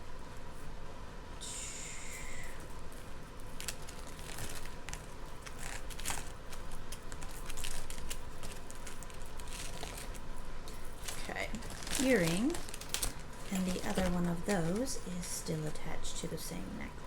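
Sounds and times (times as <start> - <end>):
soft rustling: 2.9 - 15.8.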